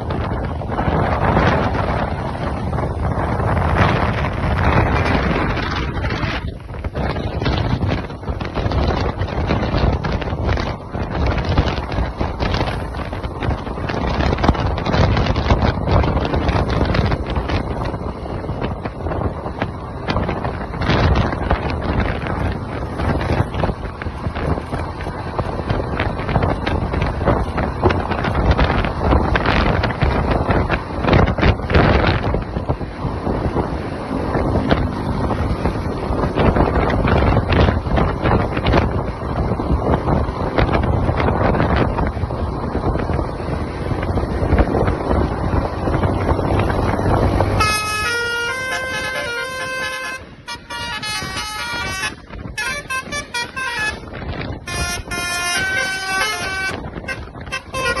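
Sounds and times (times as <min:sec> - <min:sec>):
road vehicle rumble: 0:00.0 - 0:58.0
wind buffeting microphone: 0:00.0 - 0:58.0
bus horn playing a tune: 0:47.5 - 0:58.0.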